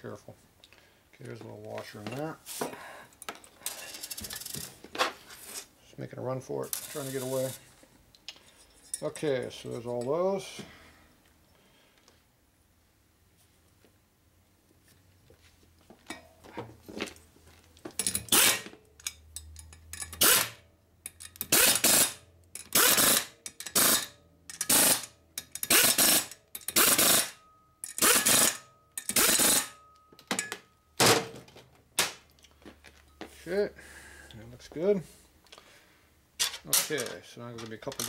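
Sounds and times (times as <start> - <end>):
nuts and washers rattling: 3.2 - 4.8, 17.9 - 20.5, 21.1 - 31.3, 36.4 - 38.0
air ratchet whirring: 18.0 - 19.1, 19.9 - 29.8.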